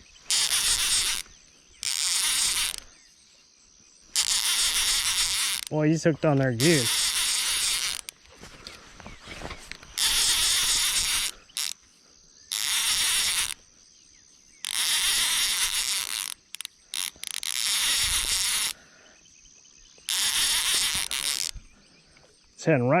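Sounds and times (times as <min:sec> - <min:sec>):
fishing reel buzzing: 0:00.0 - 0:03.1, 0:04.1 - 0:11.8, 0:12.5 - 0:13.7, 0:14.6 - 0:18.9, 0:20.1 - 0:21.8.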